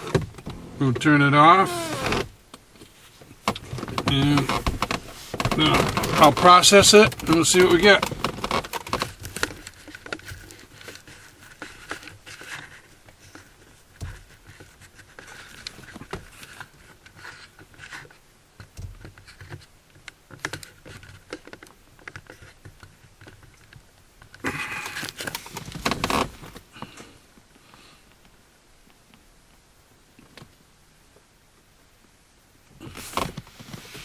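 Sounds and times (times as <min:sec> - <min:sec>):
camera handling clicks and rustling: 0:24.5 - 0:26.7.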